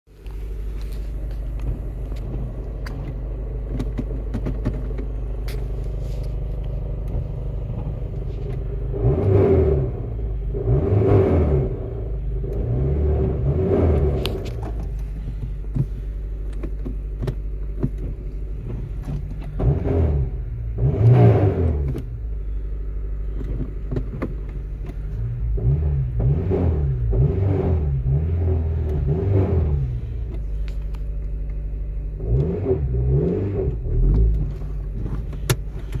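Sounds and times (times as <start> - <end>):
car engine idling and revving: 0.1 - 36.0.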